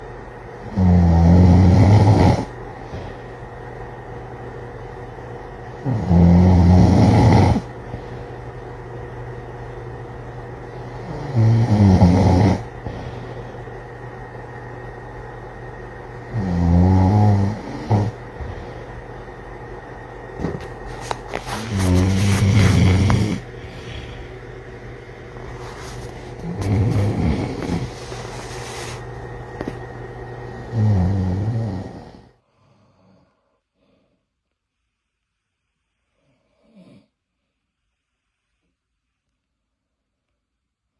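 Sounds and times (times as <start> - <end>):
deep snoring: 0.6 - 3.2, 5.8 - 7.7, 11.0 - 13.2, 16.3 - 18.8, 21.5 - 24.4, 26.4 - 29.0, 30.6 - 33.4
faint breathing: 18.3 - 19.1, 21.4 - 24.5.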